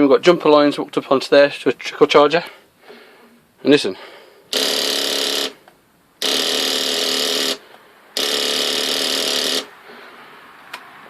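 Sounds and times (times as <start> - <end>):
starter solenoid chattering: 4.5 - 5.6, 8.2 - 9.7.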